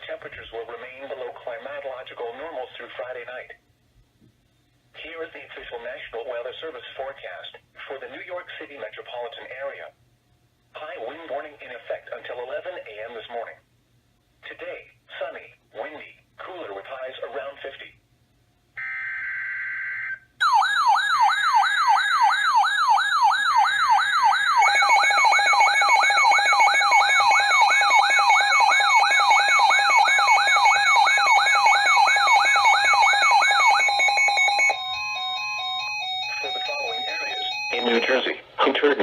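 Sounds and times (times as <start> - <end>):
sweeping siren-like alarm: 18.8 - 38.3
steady alert tones: 22.8 - 38.4.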